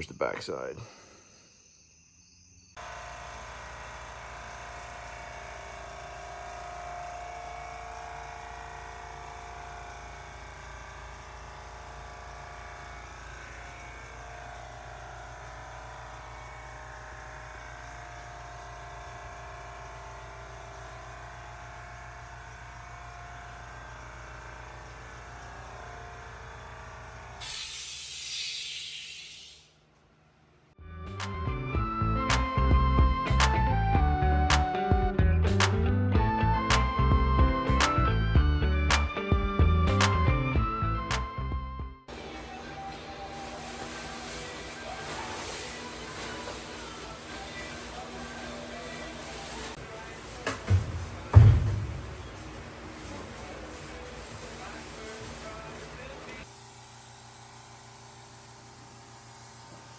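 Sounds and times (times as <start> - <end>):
small motor running: 2.8 - 29.8, 42.1 - 59.9
short hiss: 27.4 - 29.8.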